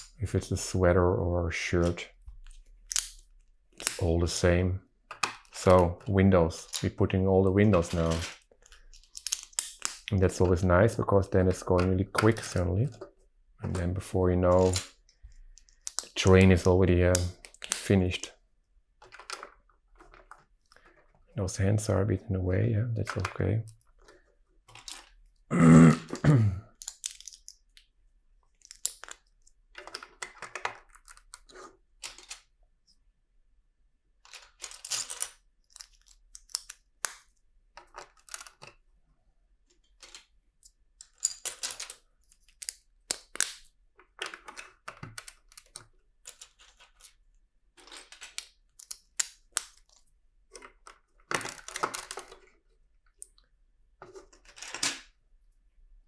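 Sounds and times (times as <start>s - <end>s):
plastic bricks clicking together: 2.4s - 4.0s, 6.5s - 7.0s, 7.7s - 10.4s, 14.5s - 18.2s, 19.0s - 21.1s, 23.0s - 25.3s, 26.7s - 27.9s, 28.5s - 32.5s, 34.2s - 38.8s, 39.8s - 47.2s, 47.8s - 53.4s.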